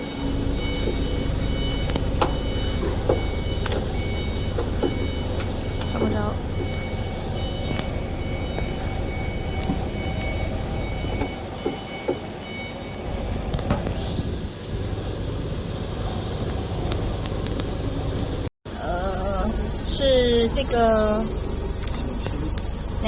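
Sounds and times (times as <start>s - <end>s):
faint high steady tones: 0.0s - 18.4s
low rumble of machinery: 0.0s - 23.0s.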